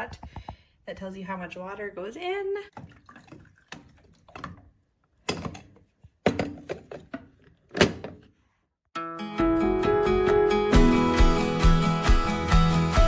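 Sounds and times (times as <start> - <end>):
guitar music: 9.0 - 13.0.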